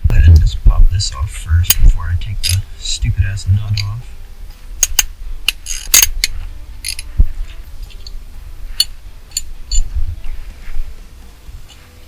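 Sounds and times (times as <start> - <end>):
plastic clicks and snaps: 4.8 - 7.1.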